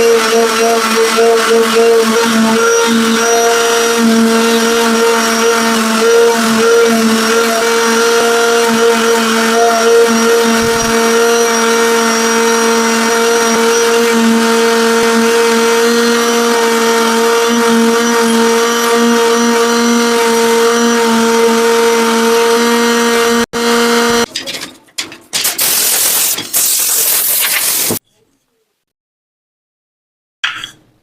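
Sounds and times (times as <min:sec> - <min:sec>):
electric power tool motor running: 0:00.0 - 0:24.3.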